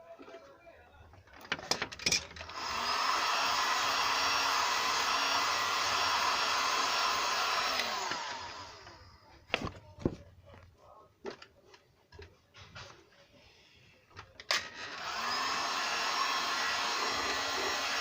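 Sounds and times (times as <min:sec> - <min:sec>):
hot-air blower hissing: 0:02.5 - 0:09.2, 0:14.8 - 0:18.0.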